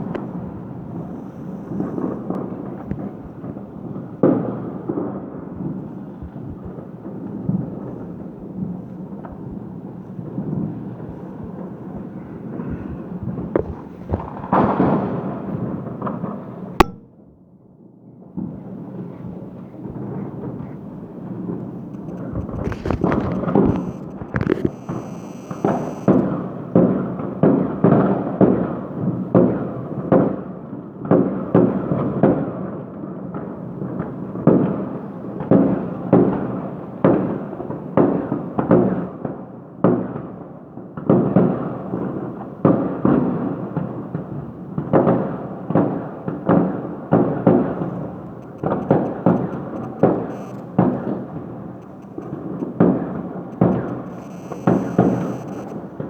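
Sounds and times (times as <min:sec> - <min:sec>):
fireworks bangs: 0:21.9 - 0:27.0, 0:44.8 - 0:56.0.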